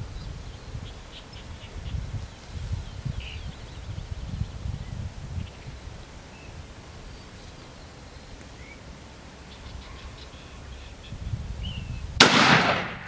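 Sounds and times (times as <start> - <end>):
low wind rumble: 0.0 - 13.0
faint bird chirps: 9.4 - 12.0.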